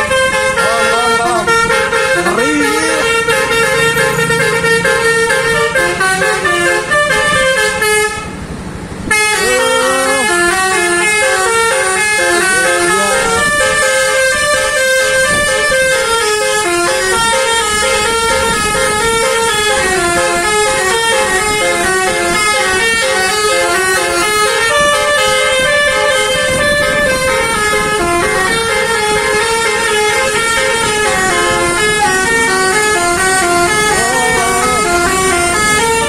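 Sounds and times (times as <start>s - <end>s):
musical air horn melody: 0.0s - 8.3s, 9.1s - 36.0s.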